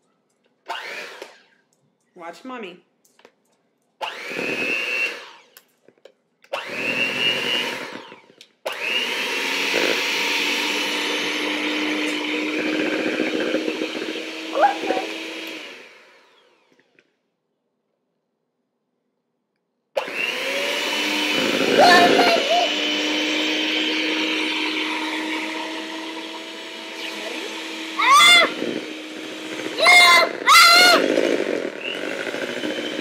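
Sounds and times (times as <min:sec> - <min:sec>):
electric mixer whirring: 0:00.7 - 0:01.5, 0:04.0 - 0:05.6, 0:06.5 - 0:17.0, 0:20.0 - 0:33.0.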